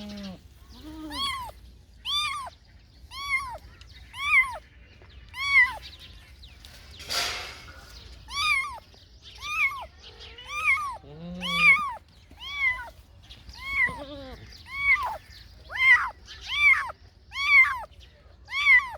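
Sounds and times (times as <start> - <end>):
kitten meowing: 0.0 - 2.5, 3.1 - 4.6, 5.4 - 5.8, 8.3 - 8.8, 9.4 - 17.9, 18.5 - 18.9.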